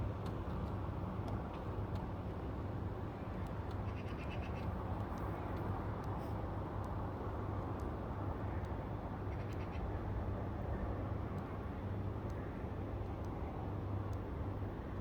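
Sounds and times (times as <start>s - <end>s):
faint high ticks: 5.0s - 6.2s, 14.0s - 14.3s.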